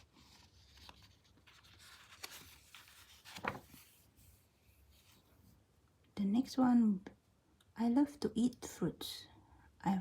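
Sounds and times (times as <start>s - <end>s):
paper pages rustling: 0.0s - 5.4s.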